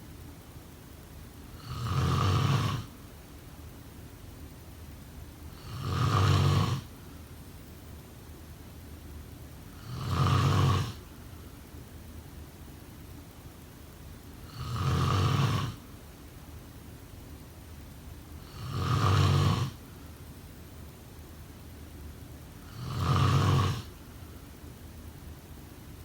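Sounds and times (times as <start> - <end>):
person snoring deeply: 1.6 - 2.9, 5.6 - 6.9, 9.8 - 11.0, 14.5 - 15.8, 18.4 - 19.8, 22.7 - 23.9.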